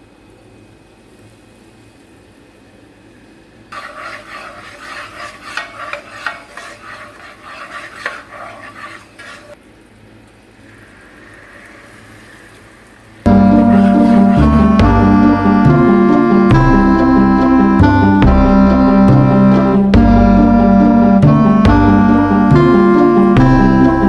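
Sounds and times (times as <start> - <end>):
food sizzling in a pan: 3.7 - 9.6
utensil scraping and clattering: 3.7 - 9.6, 13.3 - 14.8
loud music: 13.3 - 24.0.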